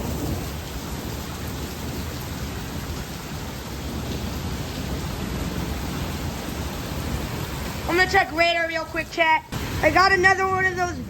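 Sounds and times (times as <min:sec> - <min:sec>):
low thunder rumble: 0:00.0 - 0:08.1
heavy rain pouring: 0:00.0 - 0:11.0.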